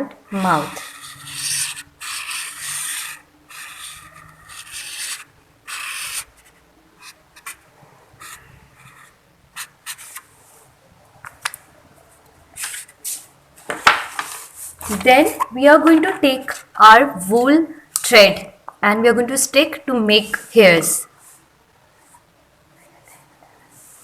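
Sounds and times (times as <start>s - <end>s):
marker pen scratching on plate: 0.0s - 10.7s, 12.2s - 13.3s, 14.2s - 16.8s.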